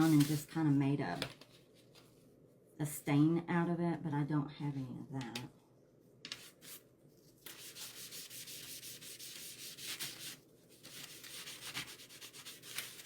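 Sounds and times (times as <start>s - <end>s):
paintbrush scrubbing on wood: 7.5s - 13.0s.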